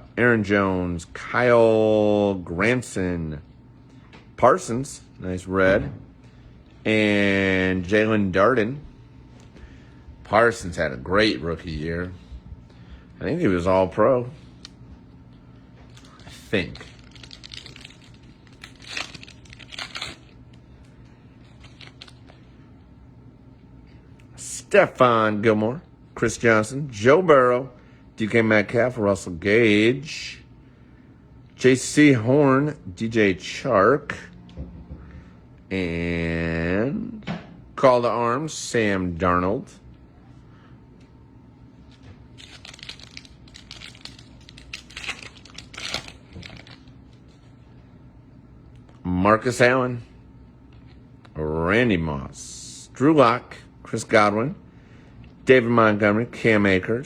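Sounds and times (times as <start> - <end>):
foil wrapper tearing and crinkling: 15.9 - 20.4, 21.4 - 22.4, 42.4 - 46.9.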